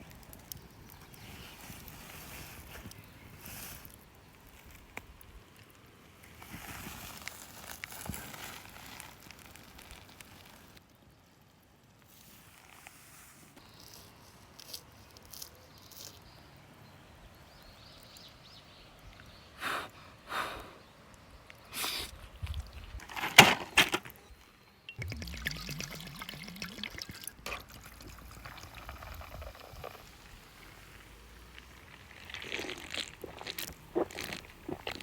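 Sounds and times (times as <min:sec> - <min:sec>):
campfire crackling: 0:00.0 - 0:10.9, 0:25.0 - 0:35.0
handling knocks and scrapes: 0:22.9 - 0:24.3.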